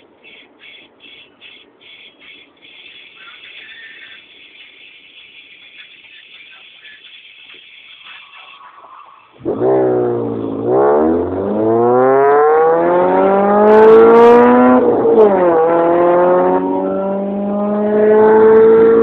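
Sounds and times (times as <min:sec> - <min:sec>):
car engine revving loudly: 0:09.4 - 0:19.0.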